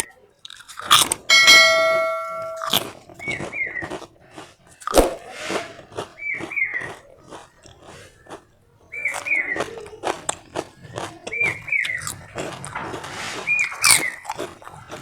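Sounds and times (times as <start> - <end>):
crunching and chewing snacks: 0.0 - 1.3, 2.6 - 15.0
metallic ring: 1.3 - 2.8.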